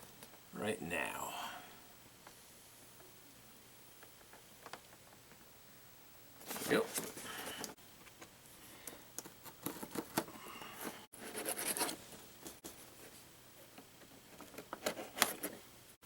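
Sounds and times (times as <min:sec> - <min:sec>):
box packaging scratching and tapping: 0:09.2 - 0:10.3, 0:11.2 - 0:12.8, 0:14.2 - 0:15.6.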